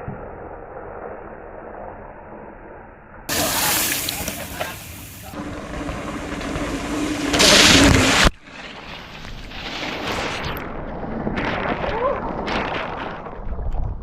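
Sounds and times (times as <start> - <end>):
bike tyres on dirt: 3.3 - 14.0
wind noise: 3.3 - 14.0.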